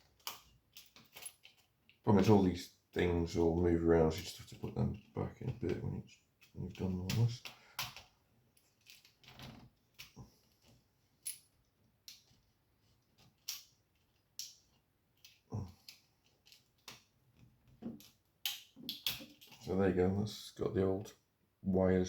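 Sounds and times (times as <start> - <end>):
small plastic and metal parts clicking: 0.0 - 2.0, 13.2 - 17.1.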